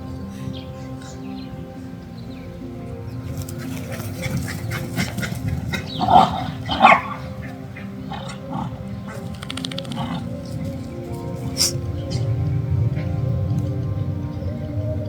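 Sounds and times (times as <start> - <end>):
background music: 0.0 - 15.0
dog barking: 3.8 - 10.6.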